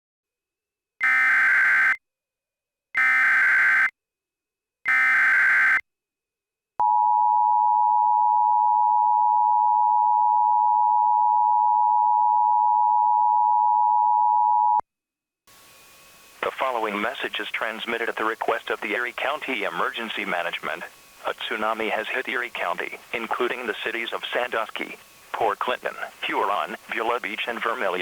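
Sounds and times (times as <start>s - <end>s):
buzzy data bursts: 15.6s - 28.0s.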